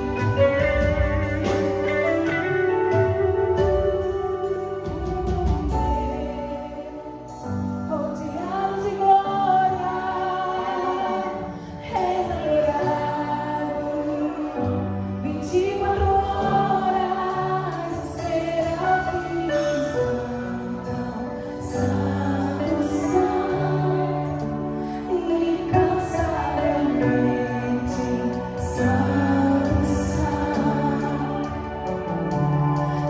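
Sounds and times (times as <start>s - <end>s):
instrumental accompaniment: 0.0s - 7.9s
choir singing gospel song: 0.0s - 33.0s.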